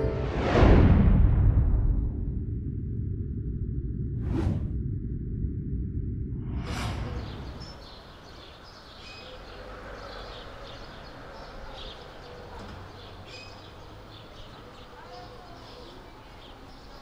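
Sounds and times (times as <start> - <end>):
small birds chirping: 7.1 - 17.0.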